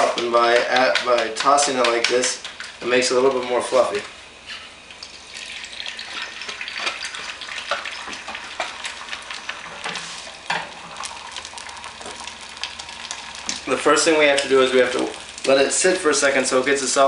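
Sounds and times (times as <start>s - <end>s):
eggs sizzling in oil: 4.9s - 17.0s.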